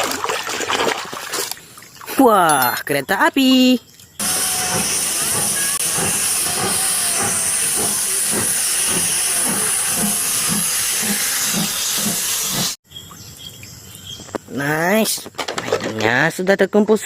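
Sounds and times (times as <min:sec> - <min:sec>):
rhythmic scrubbing strokes: 0:04.2 - 0:12.8
water spraying hiss: 0:04.2 - 0:12.8.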